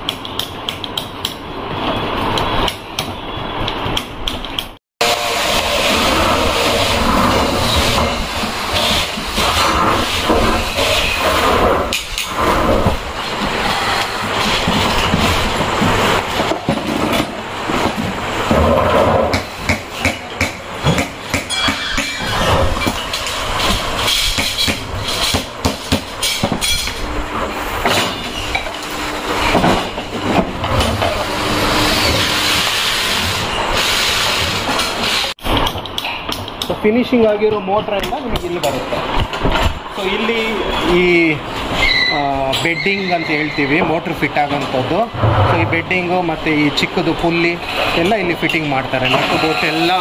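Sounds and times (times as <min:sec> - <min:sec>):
steady hums: 0:00.0 - 0:41.8
factory machinery running: 0:00.0 - 0:50.0.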